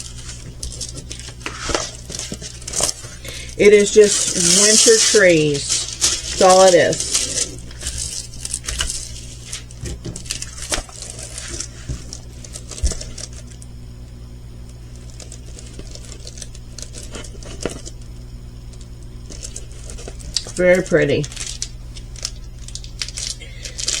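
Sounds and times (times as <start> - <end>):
plastic bags clicking and rustling: 0.0 - 13.6, 18.7 - 24.0
low room hum: 0.0 - 24.0.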